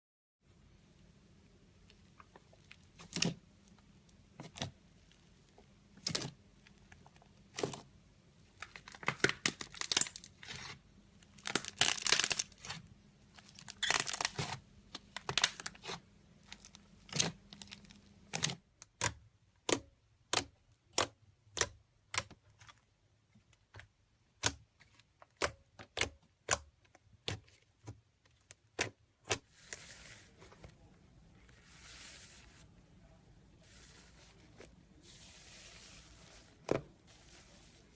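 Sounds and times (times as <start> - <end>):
slime popping and crackling: 8.6 - 10.7, 11.3 - 12.8, 13.4 - 22.3.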